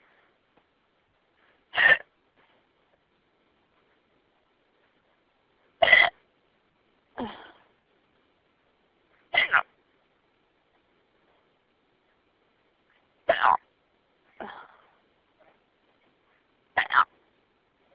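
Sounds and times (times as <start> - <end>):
person hiccuping: 1.7 - 2.1, 5.8 - 6.2, 9.3 - 9.7, 13.3 - 13.6, 16.8 - 17.1.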